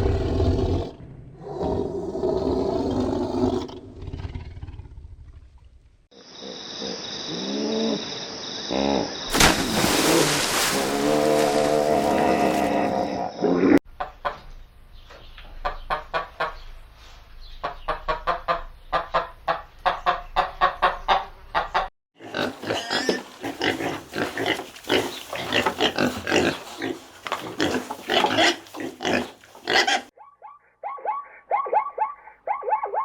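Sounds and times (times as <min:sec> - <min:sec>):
pigs grunting: 0:10.8 - 0:13.8, 0:22.2 - 0:30.1.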